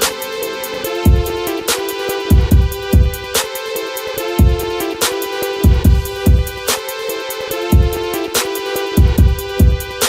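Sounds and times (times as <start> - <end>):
electronic music with beat: 0.0 - 10.0.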